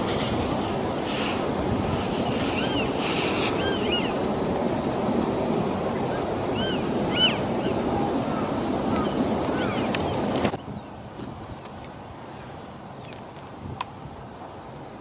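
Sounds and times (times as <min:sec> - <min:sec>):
steady rushing noise: 0:00.0 - 0:10.6
bird whistled calls: 0:02.2 - 0:04.2, 0:06.6 - 0:08.0.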